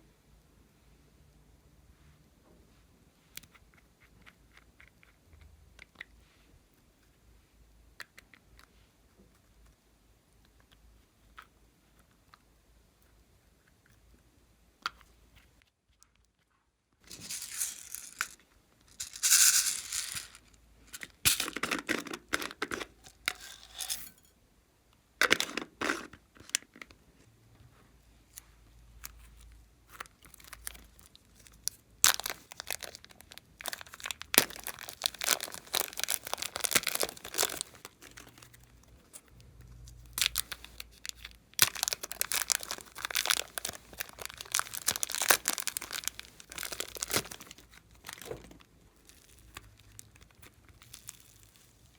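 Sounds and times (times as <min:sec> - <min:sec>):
slime crackling and tearing: 0:30.2 - 0:38.5, 0:40.1 - 0:48.3.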